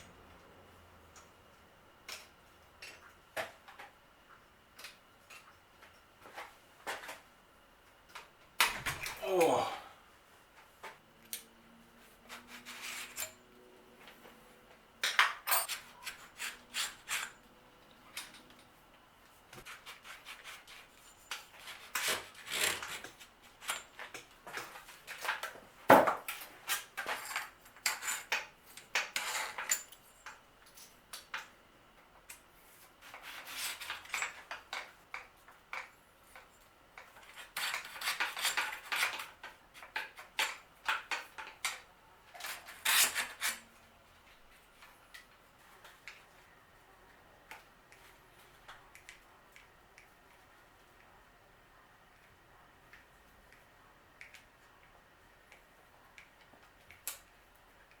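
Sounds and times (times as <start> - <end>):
metal tools and bicycle parts clinking: 15.0 - 17.4, 26.7 - 30.9.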